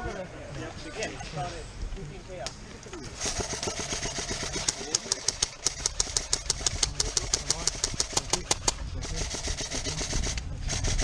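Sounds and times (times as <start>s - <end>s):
airsoft rifle shots: 3.2s - 11.0s.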